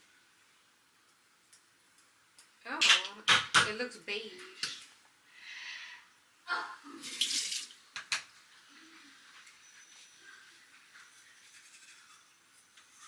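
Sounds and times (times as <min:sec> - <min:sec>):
faint hiss: 0:03.8 - 0:13.0.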